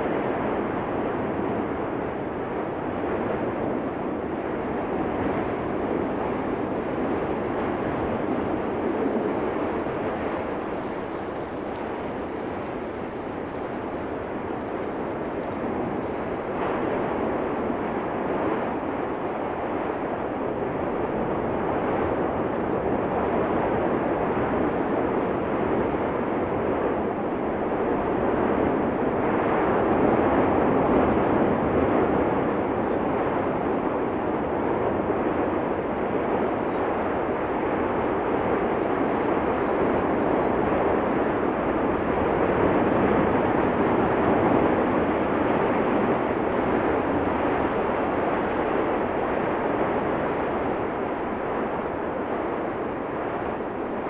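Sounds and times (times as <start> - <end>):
volcano vents rushing: 0.0 - 54.0.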